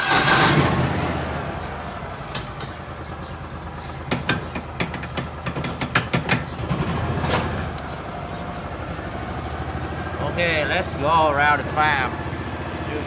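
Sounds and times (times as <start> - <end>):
utility vehicle engine running: 0.0 - 13.0
sharp rattles and knocks: 2.2 - 8.0.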